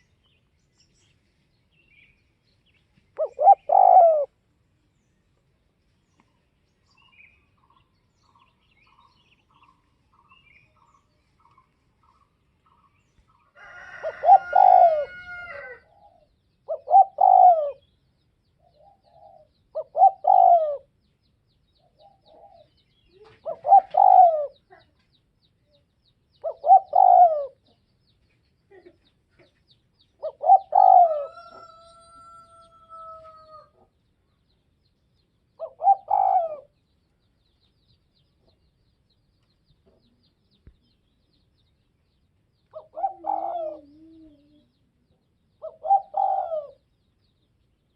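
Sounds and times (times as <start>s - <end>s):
dove cooing: 3.2s - 4.4s, 13.6s - 17.9s, 18.6s - 20.9s, 21.9s - 24.9s, 26.4s - 27.8s, 30.2s - 33.9s, 35.6s - 36.8s, 42.7s - 44.9s, 45.6s - 46.9s.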